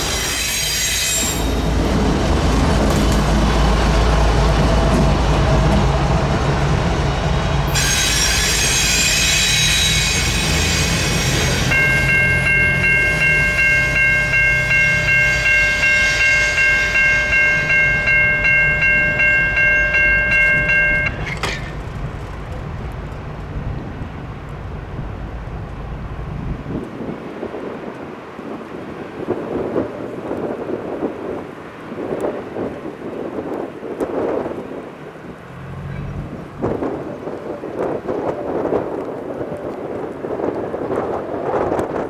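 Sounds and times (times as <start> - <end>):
train wheels screeching: 0.0 - 23.3
freight train rumbling: 0.0 - 42.0
bell ringing: 7.7 - 21.8.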